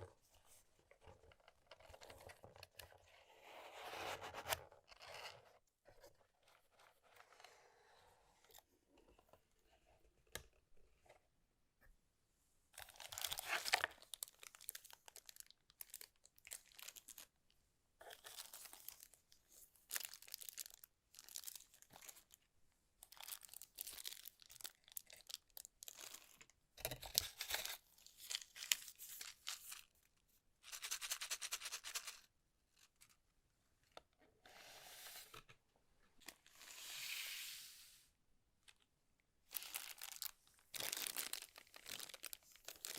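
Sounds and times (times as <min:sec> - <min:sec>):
packaging tearing and crinkling: 0:39.6 - 0:42.9.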